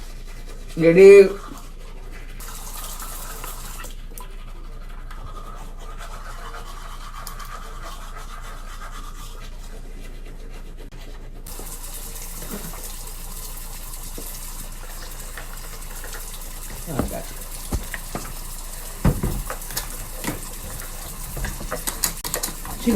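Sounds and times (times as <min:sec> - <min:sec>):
toothbrush scrubbing teeth: 0:00.0 - 0:22.9
tap running into sink: 0:15.0 - 0:22.7.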